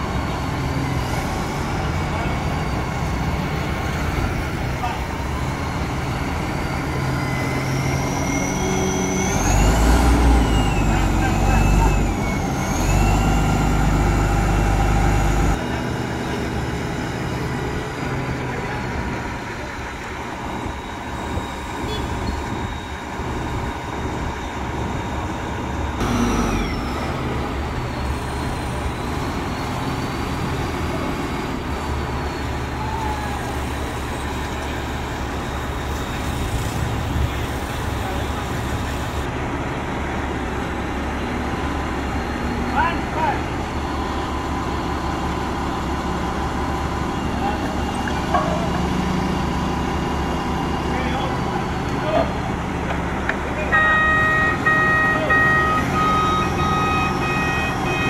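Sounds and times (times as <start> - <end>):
heavy engine running: 0.0 - 58.0
people talking: 4.7 - 5.3, 10.6 - 12.2, 18.4 - 20.5, 37.1 - 39.3, 42.7 - 43.5, 47.3 - 48.9, 50.8 - 52.4, 53.3 - 56.0.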